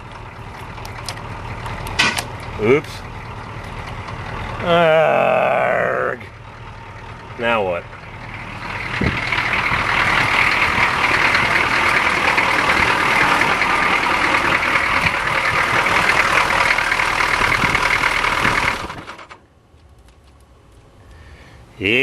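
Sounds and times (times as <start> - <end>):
starter motor cranking engine: 6.4 - 19.5.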